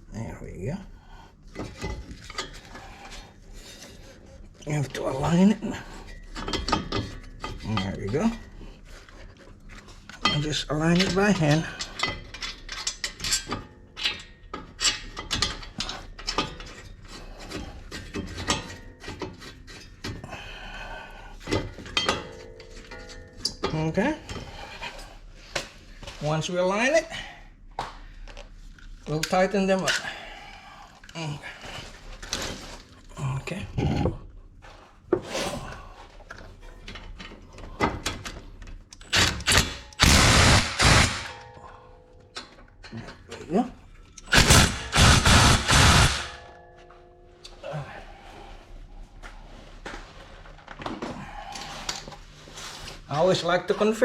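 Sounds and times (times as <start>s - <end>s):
tools and metal parts knocking: 6.2s - 8.5s, 10.1s - 20.2s
impact wrench bursts: 39.1s - 41.4s, 44.3s - 46.4s.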